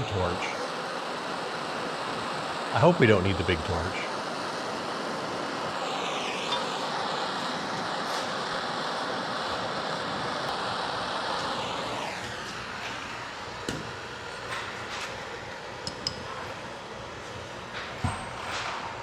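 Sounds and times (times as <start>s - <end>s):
gas torch hissing: 0.0s - 19.0s.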